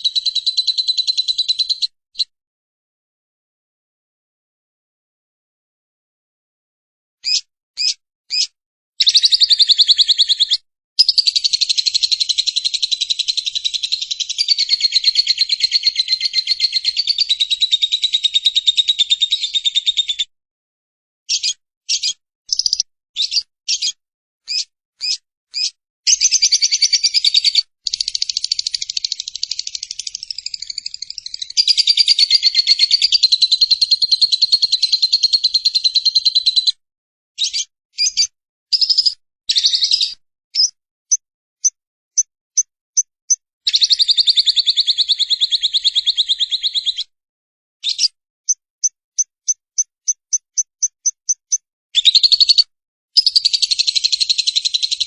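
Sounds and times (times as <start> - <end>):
short sharp bird chirps: 7.2 - 12.3, 21.3 - 33.1, 37.4 - 47.1, 47.8 - 55.0
lovebird chattering trill: 7.2 - 20.2, 21.3 - 36.7, 43.7 - 47.1, 49.2 - 52.6, 53.2 - 55.0.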